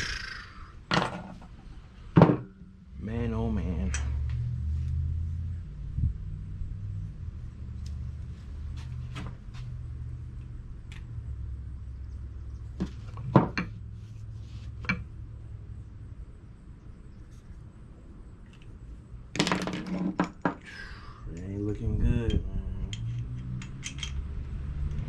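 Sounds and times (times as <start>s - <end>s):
metal tools clinking and knocking: 22.9s - 24.2s.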